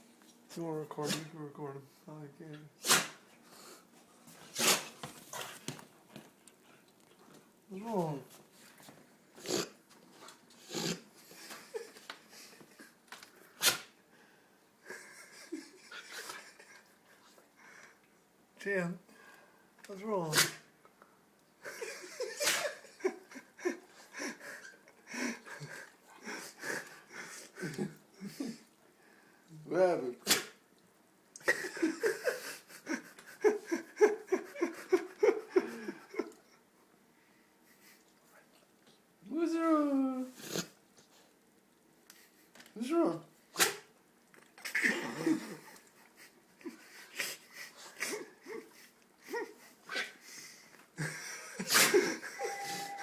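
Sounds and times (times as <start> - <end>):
dog sneezing: 1.0 - 1.3, 2.8 - 3.2, 4.5 - 5.0, 9.4 - 9.8, 13.6 - 14.0, 20.3 - 20.7, 22.3 - 22.8, 30.2 - 30.6, 43.5 - 43.9, 49.9 - 50.2, 51.6 - 52.1
person laughing: 14.8 - 16.9, 31.4 - 36.5, 44.8 - 49.8.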